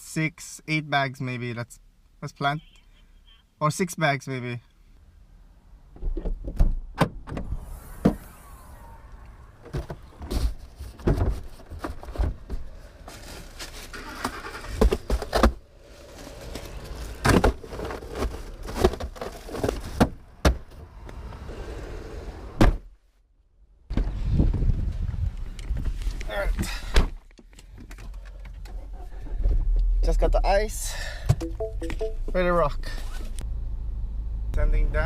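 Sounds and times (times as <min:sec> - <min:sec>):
car low rumble: 0:04.7 - 0:22.6, 0:27.6 - 0:35.0
sharp knocks and clunks: 0:06.0 - 0:08.2.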